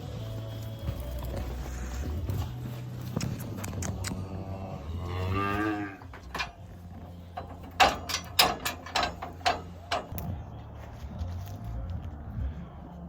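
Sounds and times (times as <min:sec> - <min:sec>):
cow mooing: 0:04.1 - 0:06.2
sharp knocks and clanks: 0:06.0 - 0:06.7, 0:07.3 - 0:10.3.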